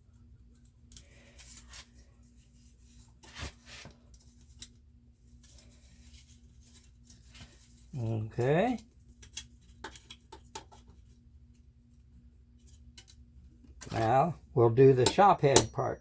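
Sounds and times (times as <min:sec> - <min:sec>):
faint steady hum: 0:11.5 - 0:16.0.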